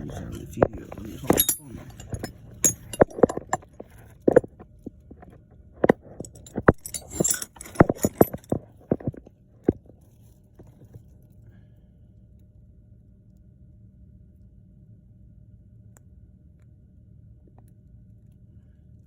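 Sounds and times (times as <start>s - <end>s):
small metal parts clinking: 0.3s - 9.8s.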